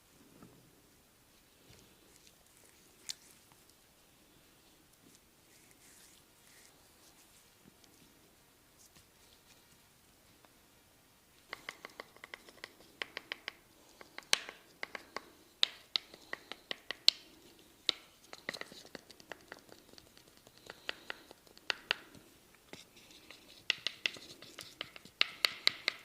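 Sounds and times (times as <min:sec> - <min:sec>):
light scratchy rubbing: 0:05.0 - 0:08.2
hands clicking and patting: 0:11.5 - 0:26.0.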